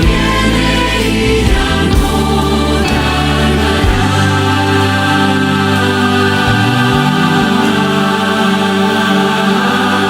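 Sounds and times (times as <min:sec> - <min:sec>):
slow sustained music chords: 0:00.0 - 0:10.0.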